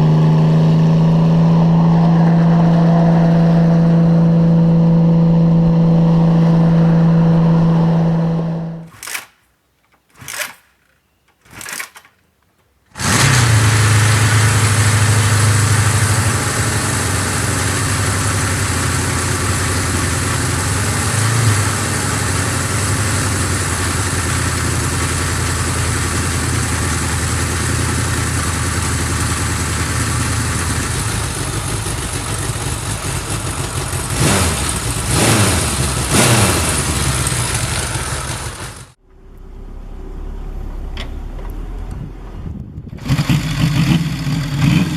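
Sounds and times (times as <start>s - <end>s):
motorcycle engine idling and revving: 0.0s - 9.4s, 10.0s - 12.2s, 12.9s - 44.9s
short sharp sounds: 8.8s - 12.3s.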